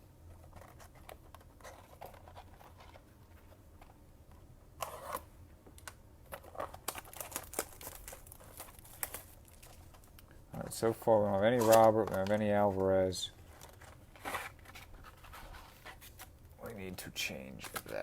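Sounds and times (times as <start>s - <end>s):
wrapper crinkling and tearing: 6.3s - 10.2s, 11.4s - 12.8s.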